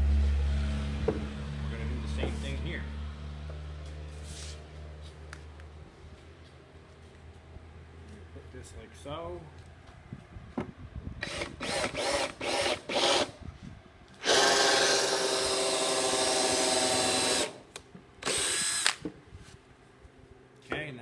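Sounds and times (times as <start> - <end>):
power drill boring into wood: 11.2 - 13.4, 14.2 - 19.0.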